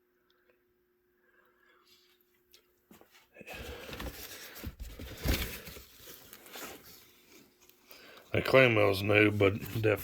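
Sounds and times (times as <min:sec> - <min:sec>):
cardboard rustling and scraping: 0:03.0 - 0:07.6, 0:09.0 - 0:10.0.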